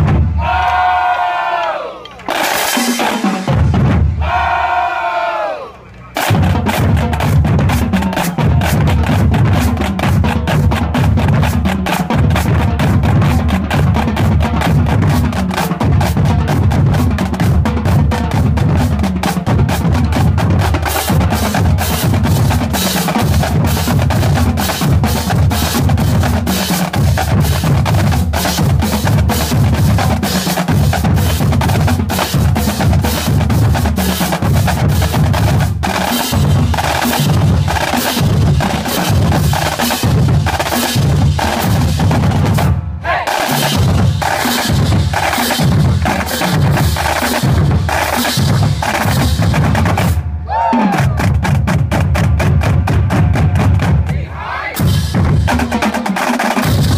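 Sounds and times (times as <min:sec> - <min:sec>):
pounding bass drums: 0:00.0 - 0:00.9, 0:02.2 - 0:04.6, 0:06.1 - 0:56.9
snare drums rattling: 0:06.1 - 0:54.1, 0:54.8 - 0:56.9.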